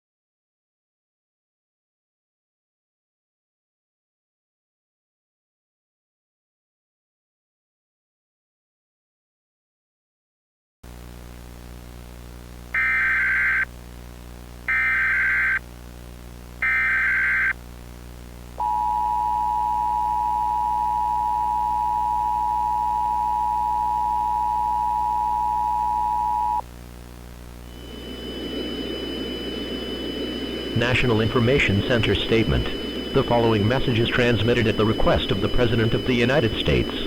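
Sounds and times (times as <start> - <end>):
warbling digital data bursts: 12.8 - 13.7, 14.7 - 15.6, 16.6 - 17.6, 27.8 - 37.0
low droning background: 18.1 - 37.0.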